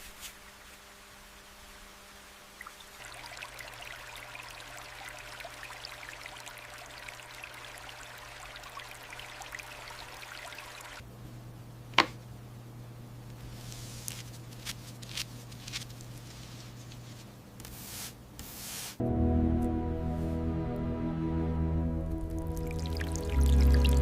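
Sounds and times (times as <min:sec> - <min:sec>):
low steady hum: 0:00.0 - 0:17.7, 0:19.0 - 0:24.0
water trickling and dripping: 0:02.4 - 0:11.0, 0:22.1 - 0:24.0
soft music: 0:19.0 - 0:24.0.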